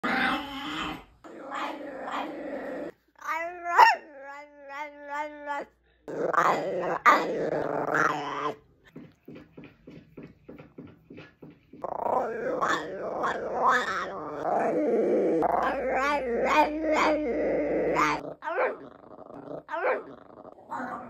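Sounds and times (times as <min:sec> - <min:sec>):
puppy whining: 0:00.0 - 0:08.6, 0:11.8 - 0:21.0
puppy growling: 0:00.0 - 0:08.7, 0:11.8 - 0:21.0.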